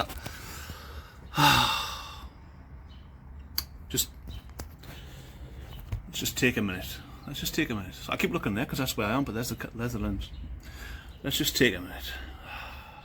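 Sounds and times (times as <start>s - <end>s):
man sighing: 1.2s - 2.3s.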